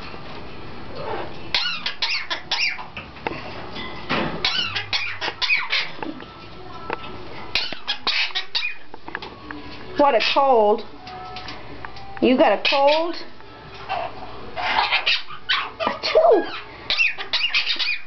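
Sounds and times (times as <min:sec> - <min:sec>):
parrot squeaky cough-like calls: 0:01.5 - 0:02.9, 0:04.4 - 0:06.0, 0:07.5 - 0:08.8, 0:13.9 - 0:18.0.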